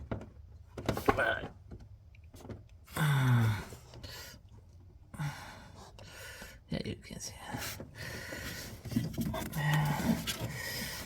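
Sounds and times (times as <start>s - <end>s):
rustles and clicks of handling: 7.4s - 11.0s.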